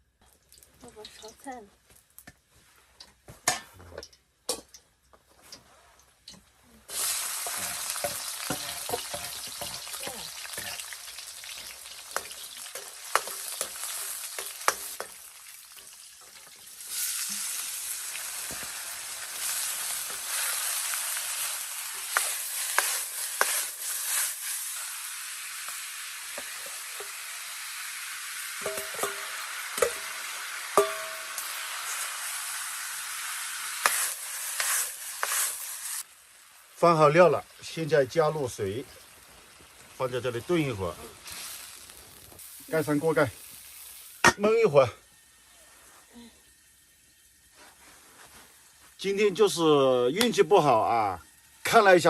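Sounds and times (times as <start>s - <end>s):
food sizzling in hot oil: 6.2s - 52.0s
metal spatula clacking and scraping: 7.4s - 16.5s, 22.0s - 24.2s, 28.6s - 31.6s.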